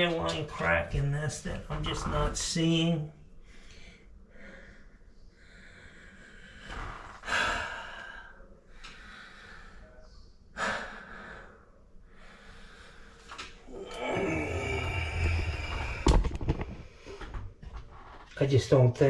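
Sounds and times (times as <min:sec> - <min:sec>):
man breathing heavily: 0:03.4 - 0:17.4.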